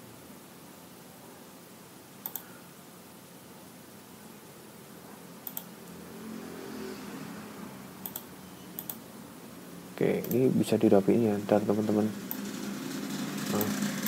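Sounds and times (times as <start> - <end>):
steady background hiss: 0.0 - 14.0
computer mouse double clicks: 8.0 - 9.0.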